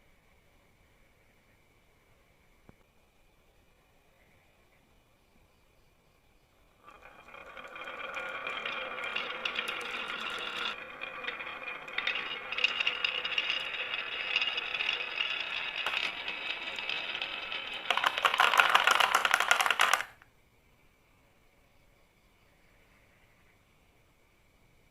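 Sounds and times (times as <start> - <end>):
marbles rattling down a track: 6.8 - 20.2.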